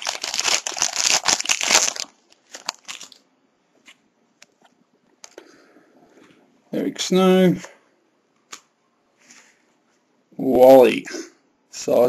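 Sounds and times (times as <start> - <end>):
foil wrapper crinkling: 0.0 - 3.2.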